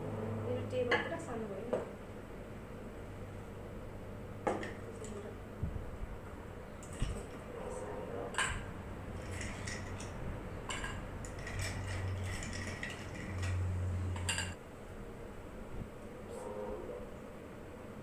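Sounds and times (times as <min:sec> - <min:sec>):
low hum: 0:00.0 - 0:18.0
dishes and cutlery clinking: 0:08.3 - 0:13.6, 0:14.2 - 0:14.6.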